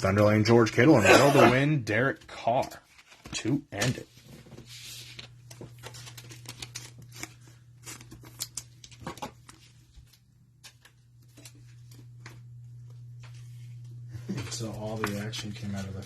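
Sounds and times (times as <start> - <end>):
trading cards flipped through: 2.5 - 12.5
steady low hum: 4.6 - 16.0.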